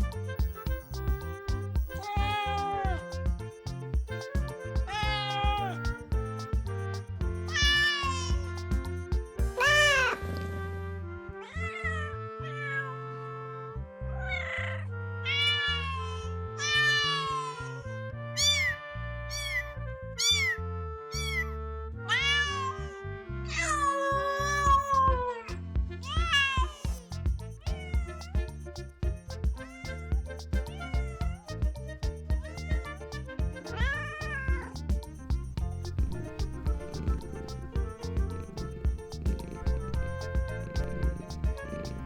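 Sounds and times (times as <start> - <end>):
background music with bass: 0.0 - 42.0
kittens meowing: 2.0 - 3.0, 4.9 - 6.0, 14.3 - 17.7, 22.1 - 22.8, 29.5 - 31.6, 32.3 - 32.9.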